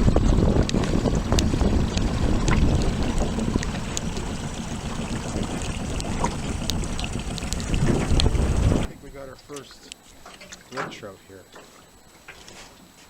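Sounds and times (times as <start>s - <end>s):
wind buffeting microphone: 0.0s - 9.4s.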